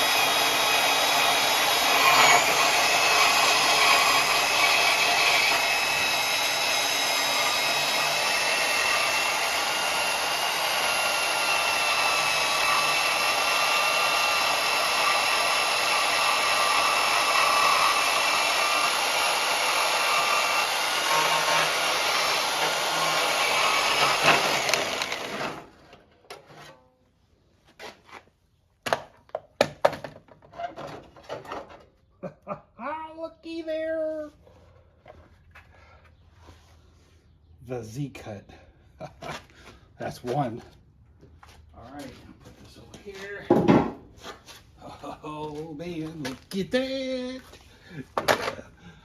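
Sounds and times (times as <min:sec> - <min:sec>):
power tool cutting steel: 0:00.0 - 0:25.8
sharp knocks and clatter: 0:43.5 - 0:44.0.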